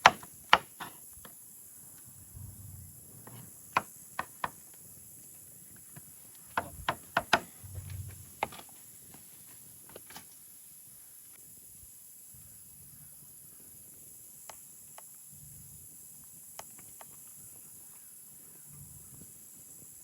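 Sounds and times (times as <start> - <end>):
low thuds: 2.2 - 3.2, 6.6 - 7.0, 7.6 - 8.3.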